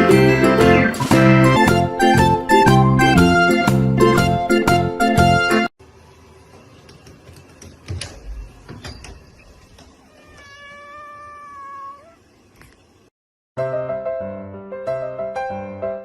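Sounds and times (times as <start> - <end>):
cat meowing: 10.0 - 12.2.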